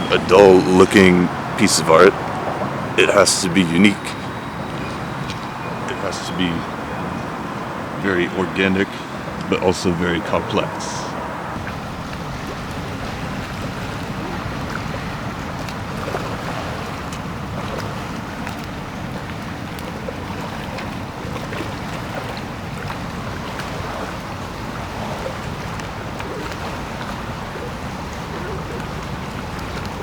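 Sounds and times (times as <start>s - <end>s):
wind rushing over microphone: 10.8s - 30.0s.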